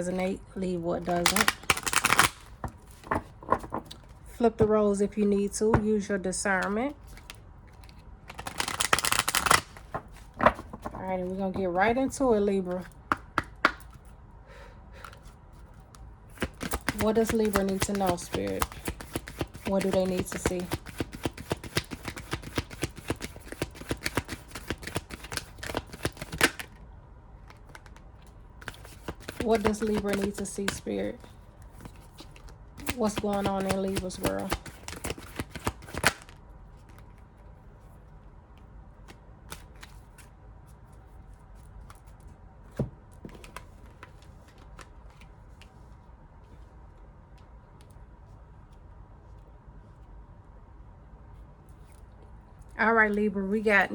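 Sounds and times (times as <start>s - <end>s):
cards being shuffled: 1.0s - 4.1s, 6.6s - 14.1s, 15.0s - 26.8s, 27.4s - 37.2s, 39.0s - 45.8s.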